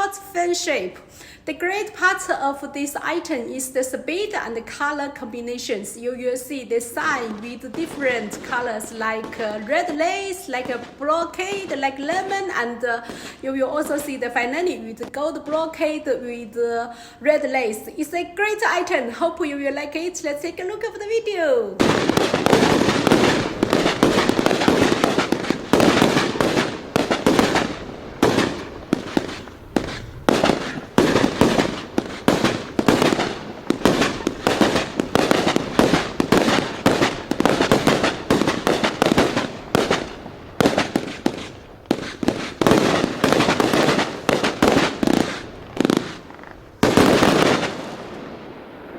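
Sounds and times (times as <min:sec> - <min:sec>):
fireworks shots and bursts: 0:21.8 - 0:48.9.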